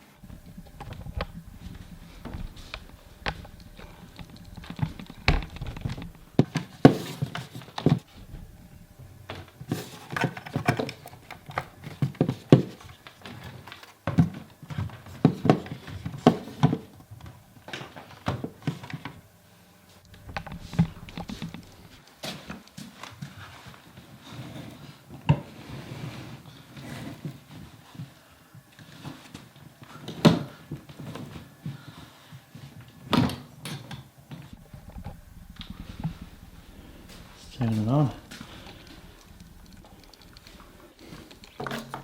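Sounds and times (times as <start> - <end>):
small hard objects clicking and knocking: 0.2 - 14.3, 34.5 - 42.0.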